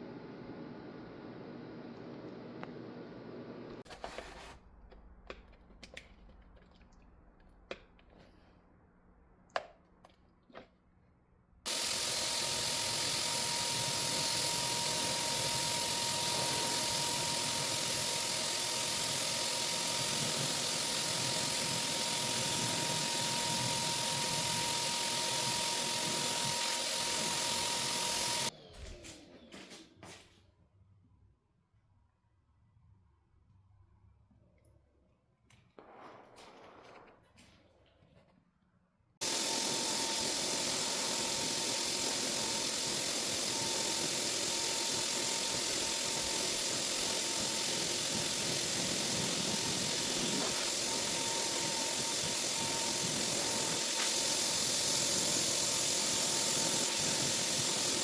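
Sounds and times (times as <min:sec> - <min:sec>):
electric tool whining: 0:11.7 - 0:29.1, 0:39.2 - 0:58.0.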